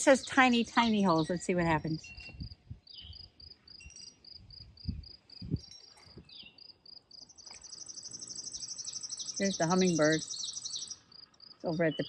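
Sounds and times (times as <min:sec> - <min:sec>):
insect chirping: 0:02.0 - 0:12.0.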